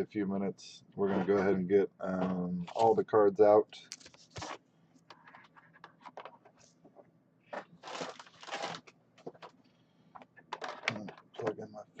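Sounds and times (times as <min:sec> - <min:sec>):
card packs ripped open crinkling: 0:07.8 - 0:09.5.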